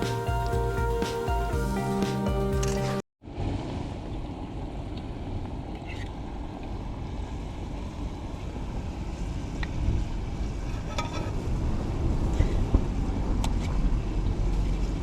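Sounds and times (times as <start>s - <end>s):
background music: 0.0s - 3.0s
wind buffeting microphone: 6.5s - 15.0s.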